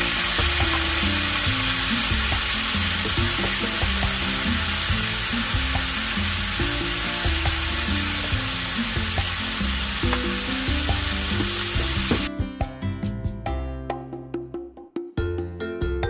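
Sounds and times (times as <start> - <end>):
food sizzling in oil: 0.0 - 12.3
soft background music: 0.0 - 14.6.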